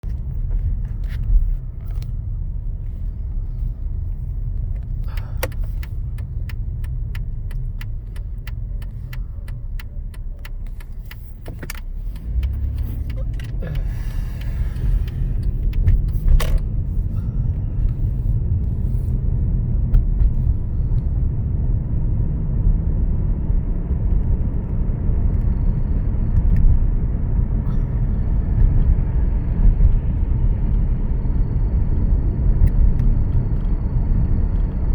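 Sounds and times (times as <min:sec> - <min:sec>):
car engine rumble: 0:00.0 - 0:34.9
light ticks: 0:04.6 - 0:16.6.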